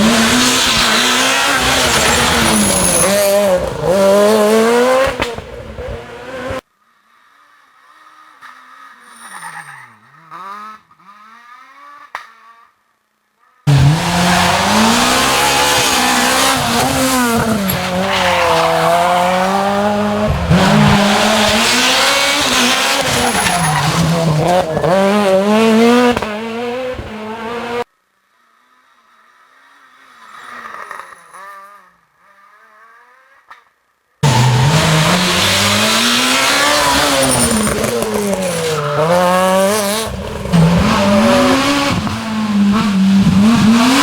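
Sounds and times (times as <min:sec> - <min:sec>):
rally car engines revving: 0:00.0 - 0:12.8, 0:13.4 - 0:44.0.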